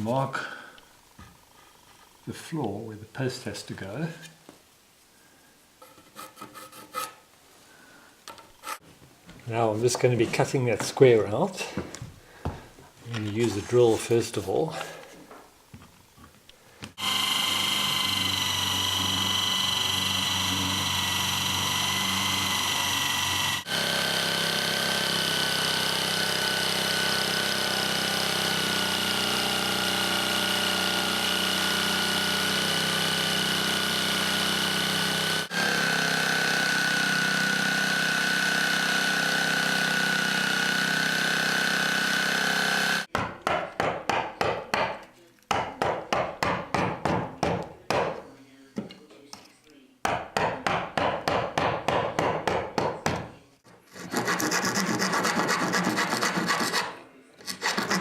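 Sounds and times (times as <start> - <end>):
electric drill boring into wood: 17.0 - 43.1.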